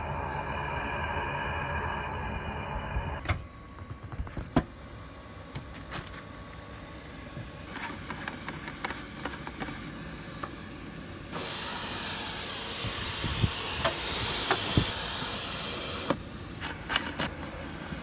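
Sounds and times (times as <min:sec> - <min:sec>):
low hum: 0:00.0 - 0:05.5
heater fan rushing: 0:00.0 - 0:18.0.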